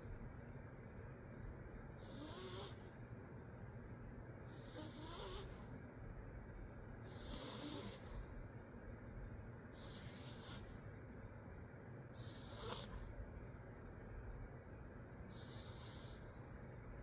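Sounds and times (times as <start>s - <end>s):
dog snoring: 2.0s - 3.0s, 4.5s - 5.7s, 7.1s - 8.3s, 9.7s - 10.8s, 12.2s - 13.1s, 15.3s - 16.4s.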